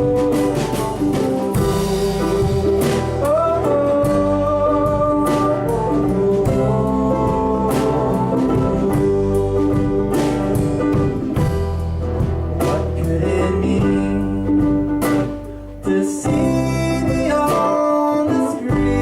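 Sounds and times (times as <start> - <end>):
live rock band playing: 0.0 - 19.0.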